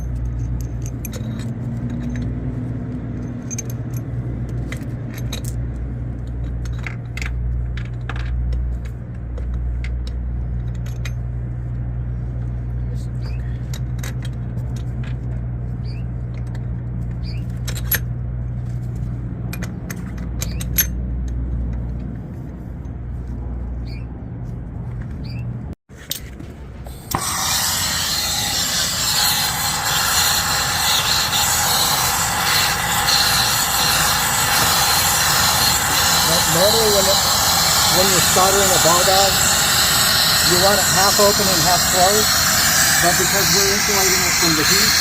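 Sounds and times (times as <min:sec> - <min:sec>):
soldering torch hissing: 0:27.1 - 0:45.0.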